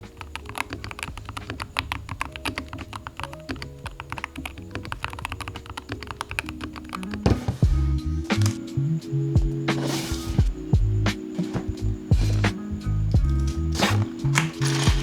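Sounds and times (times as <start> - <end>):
keyboard key clacks: 0.0 - 7.6, 13.2 - 15.0.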